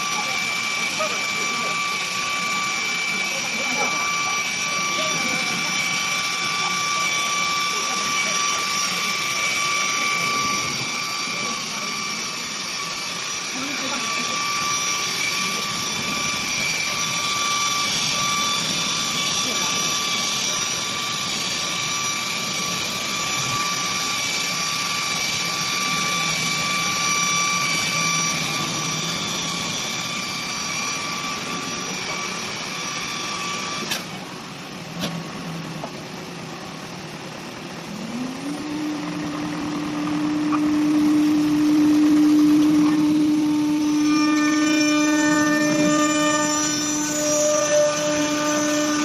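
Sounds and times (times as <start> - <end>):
motor humming: 0.0 - 49.0
router machine high whine: 0.0 - 49.0.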